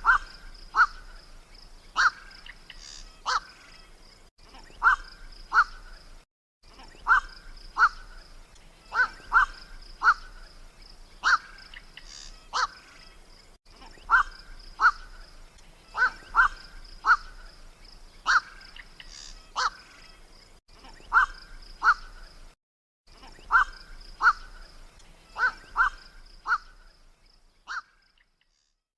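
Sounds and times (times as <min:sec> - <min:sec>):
heron harsh calls: 0:00.0 - 0:01.0, 0:02.0 - 0:03.6, 0:08.9 - 0:10.4, 0:11.2 - 0:12.9, 0:14.1 - 0:15.1, 0:15.9 - 0:17.4, 0:18.2 - 0:19.9, 0:21.1 - 0:22.2, 0:23.5 - 0:24.6, 0:25.4 - 0:26.8.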